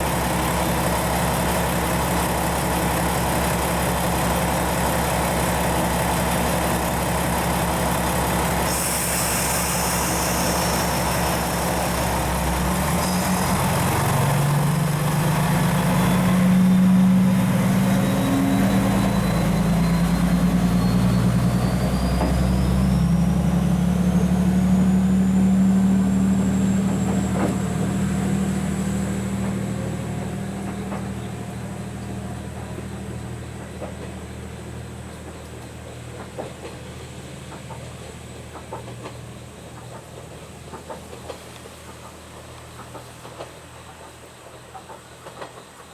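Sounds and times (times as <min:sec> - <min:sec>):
diesel railcar engine revving: 0:00.0 - 0:44.5
hiss of air: 0:08.6 - 0:15.9
thin whine climbing in pitch: 0:10.0 - 0:32.3.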